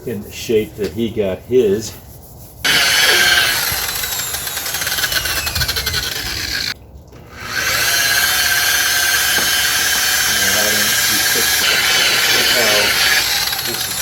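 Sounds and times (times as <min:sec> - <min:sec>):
electric polisher running: 0:02.7 - 0:06.8, 0:07.4 - 0:14.0.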